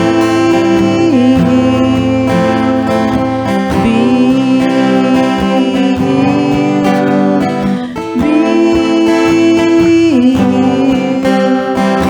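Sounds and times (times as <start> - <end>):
acoustic guitar strumming: 0.0 - 12.0.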